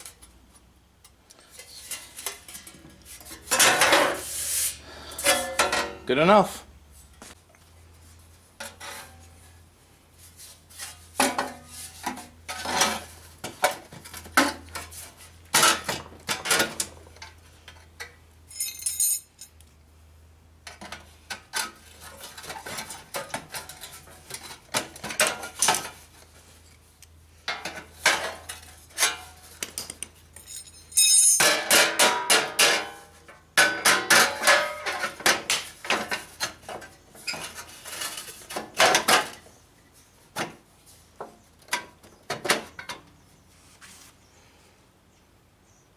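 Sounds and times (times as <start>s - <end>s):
metal tools clinking: 5.1s - 6.4s, 18.5s - 19.6s, 30.3s - 31.7s.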